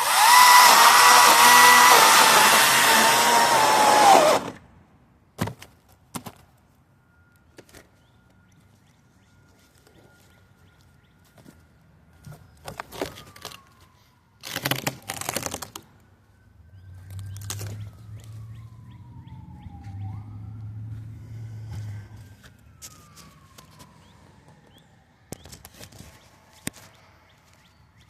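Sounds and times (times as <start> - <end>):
distant siren wailing: 0.0 - 4.7, 12.8 - 15.2, 15.8 - 26.5.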